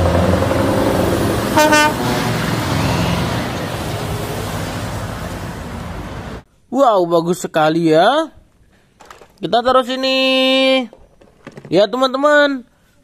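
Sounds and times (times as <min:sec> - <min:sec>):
truck engine rumbling: 0:00.0 - 0:06.4
truck horn toot: 0:00.0 - 0:06.4.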